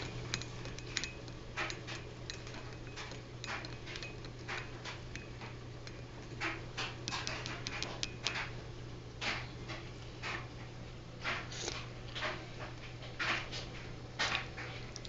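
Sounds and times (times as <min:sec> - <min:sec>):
spoon clinking in a mug: 0:00.0 - 0:06.0
steady low hum: 0:00.0 - 0:15.0.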